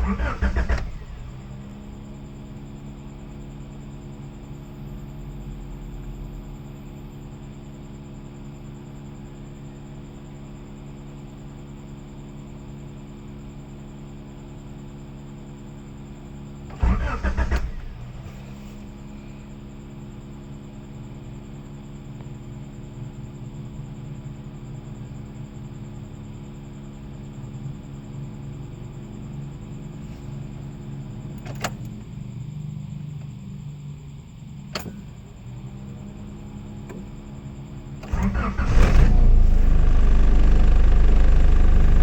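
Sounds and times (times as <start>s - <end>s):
car starter cranking: 0.0s - 2.2s, 16.7s - 18.5s, 38.0s - 42.0s
steady engine hum: 0.0s - 42.0s.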